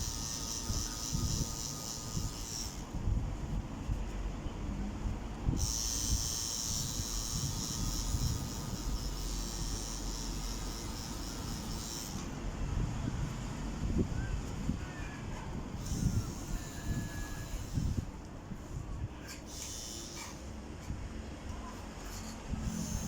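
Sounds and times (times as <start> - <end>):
electric tattoo machine buzzing: 0.0 - 3.0, 5.5 - 12.4, 15.8 - 18.2, 19.4 - 20.6, 22.2 - 23.0.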